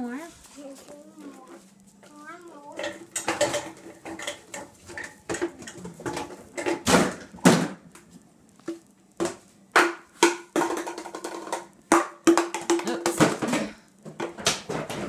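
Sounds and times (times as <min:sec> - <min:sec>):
dishes and cups clattering: 0:02.8 - 0:07.7, 0:09.8 - 0:15.0.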